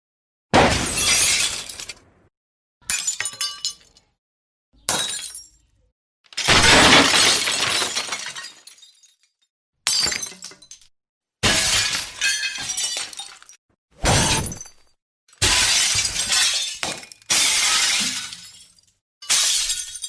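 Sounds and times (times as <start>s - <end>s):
glass shattering: 6.3s - 20.0s.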